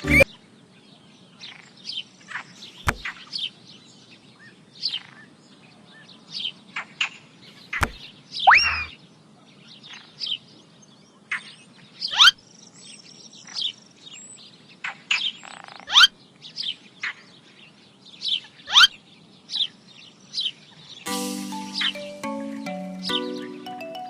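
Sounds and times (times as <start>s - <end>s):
birds chirping: 7.4s - 10.9s, 15.3s - 24.0s
thin high whistles: 8.5s - 8.9s.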